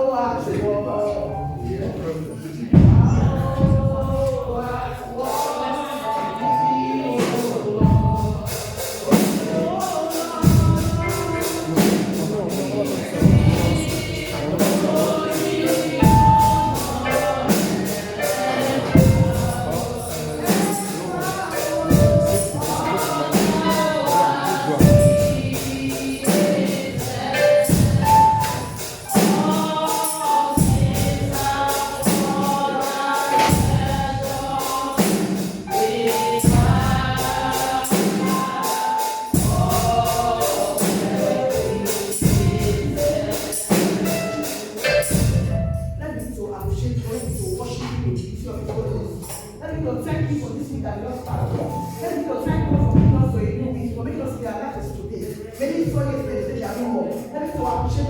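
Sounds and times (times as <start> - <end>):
group singing gospel song: 0.0 - 58.0
tambourine beat: 2.8 - 47.8, 49.1 - 49.7.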